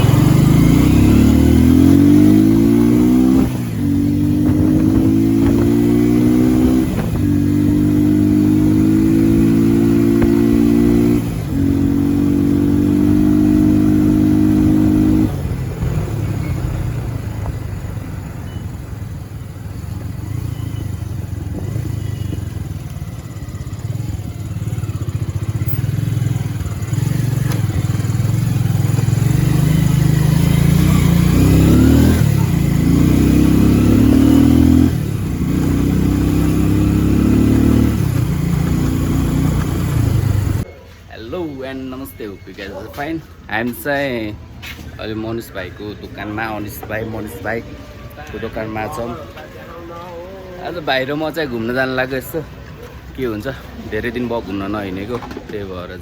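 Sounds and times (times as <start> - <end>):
motorcycle engine revving: 0.0 - 40.7.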